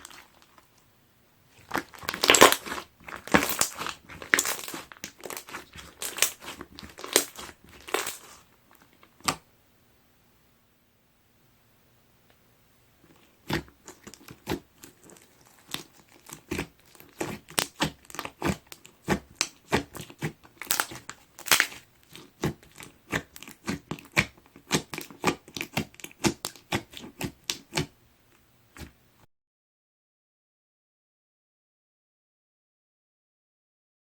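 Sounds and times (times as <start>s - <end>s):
hands squishing slime: 0.0s - 0.6s, 1.5s - 9.4s, 13.1s - 28.0s.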